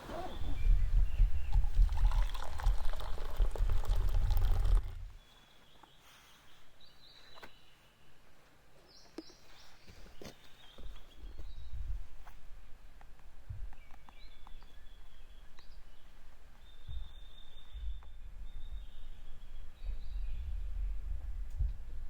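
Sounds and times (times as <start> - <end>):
liquid pouring and splashing: 1.5 - 5.1.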